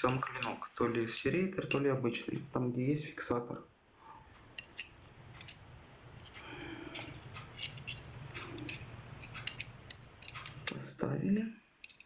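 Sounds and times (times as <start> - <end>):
small steel parts clicking: 0.0 - 1.9, 4.5 - 5.6, 6.2 - 10.8, 11.8 - 12.0.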